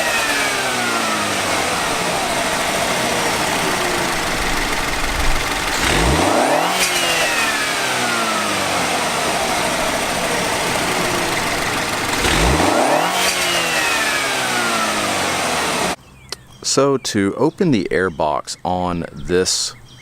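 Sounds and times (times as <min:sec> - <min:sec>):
car engine revving: 0:00.0 - 0:16.0.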